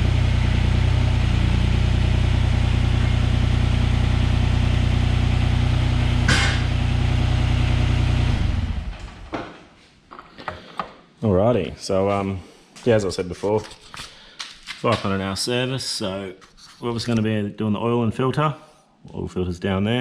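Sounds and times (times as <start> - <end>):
diesel engine idling: 0.0 - 8.9.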